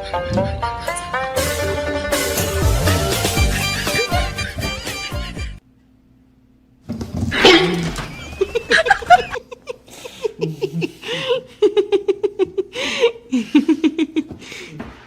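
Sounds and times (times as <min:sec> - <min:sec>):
person laughing hard: 0:01.7 - 0:05.1, 0:07.4 - 0:14.4.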